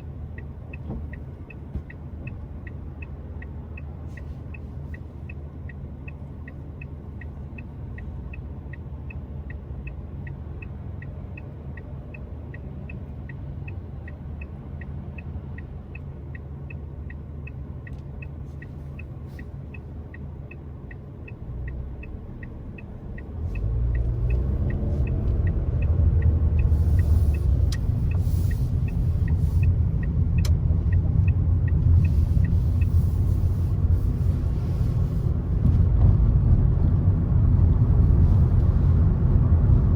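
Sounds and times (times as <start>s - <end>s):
turn signal ticking: 0.0s - 39.9s
car engine accelerating: 21.3s - 39.9s.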